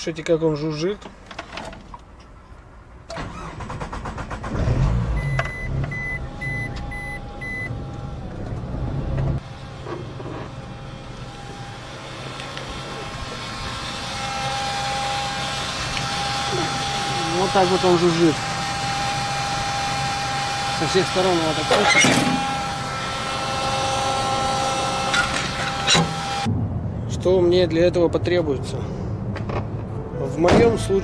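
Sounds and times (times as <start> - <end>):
engine cranking and idling: 3.1 - 18.6
short beeps: 5.2 - 7.7
fuel pump buzzing whine: 5.2 - 26.5.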